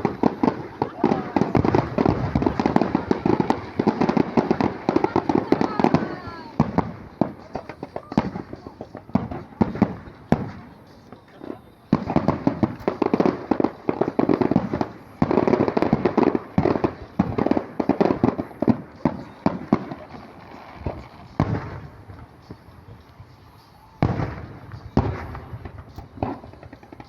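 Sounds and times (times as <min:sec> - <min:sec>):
fireworks bangs and crackling: 0:00.0 - 0:27.0.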